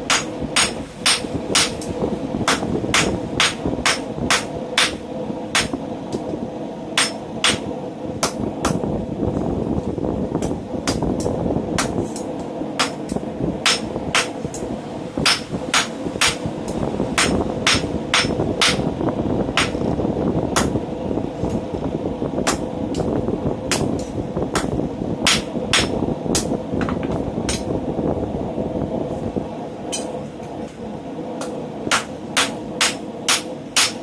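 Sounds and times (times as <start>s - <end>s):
steady rushing noise: 0.0s - 34.0s
hammer striking steel on anvil: 0.1s - 1.9s, 2.5s - 5.0s, 7.0s - 8.8s, 11.8s - 14.4s, 15.2s - 16.4s, 17.2s - 18.8s, 25.3s - 26.5s, 29.9s - 30.2s, 31.4s - 34.0s.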